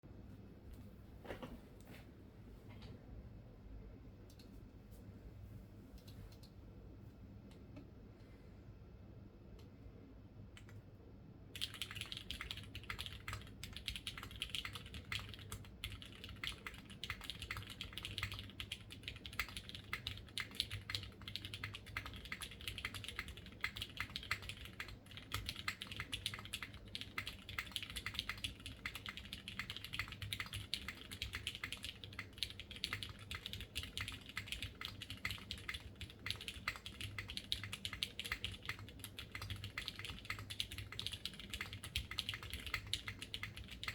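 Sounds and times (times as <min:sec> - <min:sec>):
mechanical keyboard typing: 0:11.6 - 0:43.9.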